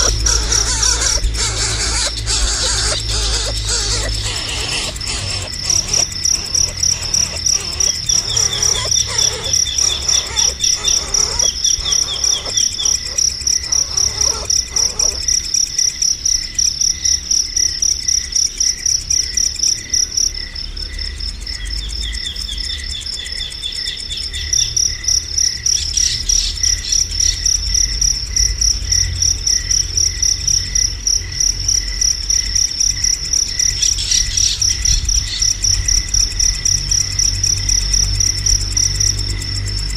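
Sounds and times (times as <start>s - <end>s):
bird trills: 0.0s - 15.3s
crickets chirping: 0.0s - 39.9s.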